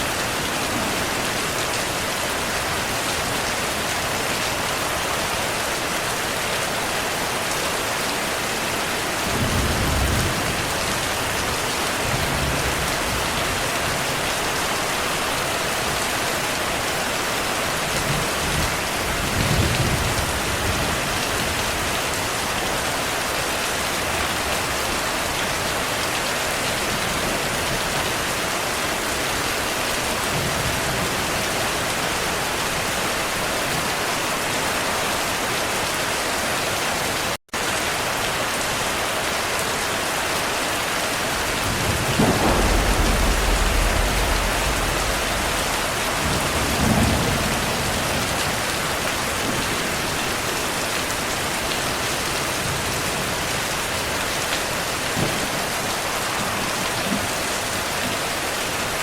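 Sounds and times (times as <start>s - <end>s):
steady rain: 0.0s - 59.0s
thunder rumbling: 41.2s - 50.2s.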